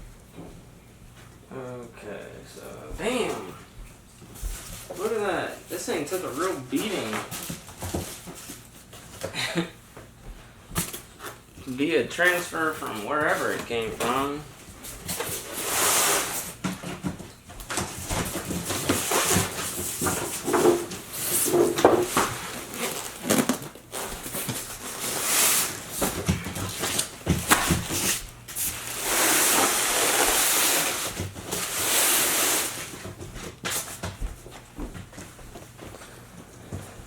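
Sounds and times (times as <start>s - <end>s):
long loud scrape: 15.5s - 16.5s, 28.8s - 32.9s
cardboard box rustling and scraping: 18.1s - 33.0s.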